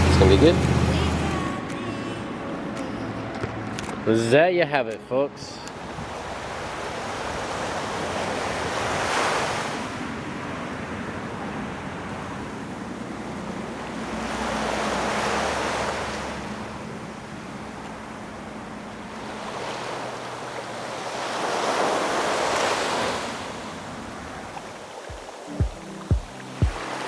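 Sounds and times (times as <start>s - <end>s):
ocean waves washing onto shore: 5.6s - 27.0s.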